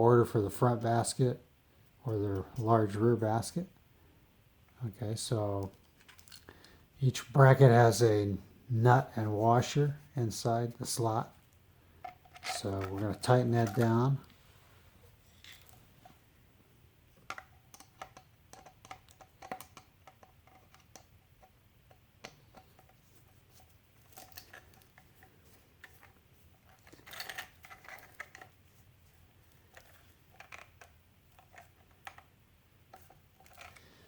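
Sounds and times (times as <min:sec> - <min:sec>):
handling noise: 0:10.9 - 0:16.3, 0:17.1 - 0:34.0
metal hardware clicks and scrapes: 0:12.0 - 0:14.3, 0:26.7 - 0:28.5.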